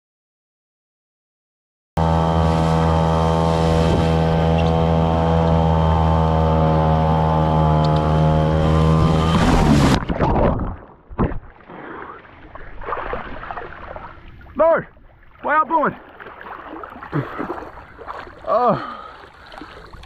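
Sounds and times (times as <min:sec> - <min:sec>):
outboard motor running: 0:02.0 - 0:10.8, 0:12.4 - 0:20.0
muffled splashing and gurgling: 0:08.1 - 0:20.0.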